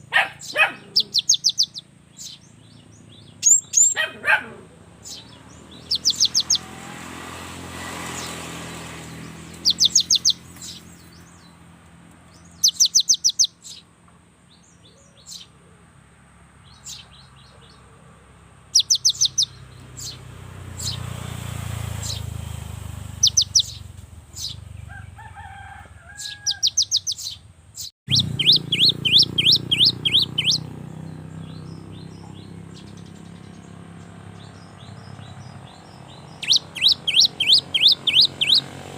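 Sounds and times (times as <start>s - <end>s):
bird singing sharp notes: 0.4s - 4.1s, 5.0s - 6.7s, 9.0s - 11.6s, 12.3s - 13.8s, 18.8s - 21.1s, 23.1s - 24.7s, 26.2s - 38.7s.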